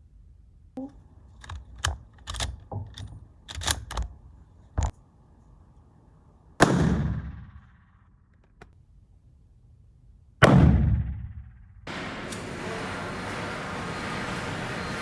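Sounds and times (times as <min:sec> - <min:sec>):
rifle shot: 0:06.6 - 0:07.8, 0:10.4 - 0:11.6.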